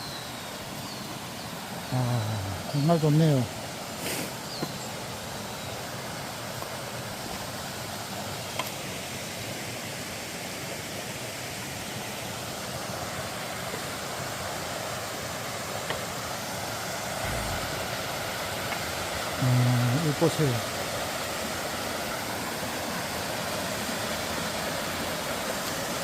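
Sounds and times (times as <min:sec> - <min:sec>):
stream rushing: 0:00.2 - 0:26.0
low thump: 0:17.2 - 0:18.0.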